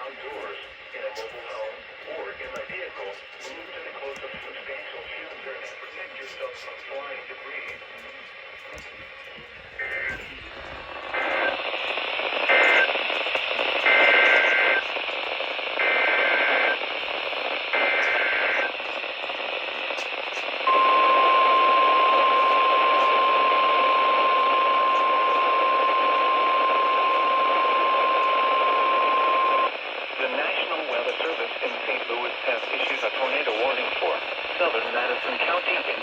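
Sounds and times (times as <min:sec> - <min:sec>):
static hiss: 0:00.0 - 0:36.0
steady warning alarm tone: 0:20.7 - 0:29.7.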